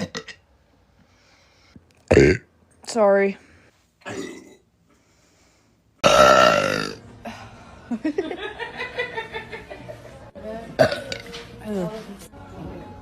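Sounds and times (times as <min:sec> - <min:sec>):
woman burping loudly: 0:00.0 - 0:00.4, 0:02.1 - 0:02.5, 0:04.0 - 0:04.7, 0:06.0 - 0:07.0, 0:10.8 - 0:11.3.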